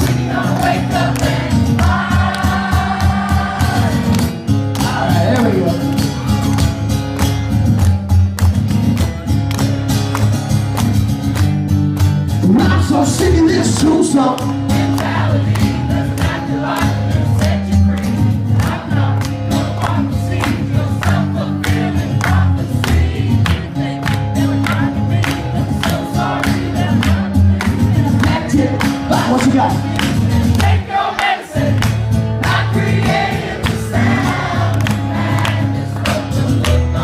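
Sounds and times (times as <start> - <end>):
audience singing along: 0.0 - 5.7, 14.4 - 37.0
strummed acoustic guitar: 0.0 - 37.0.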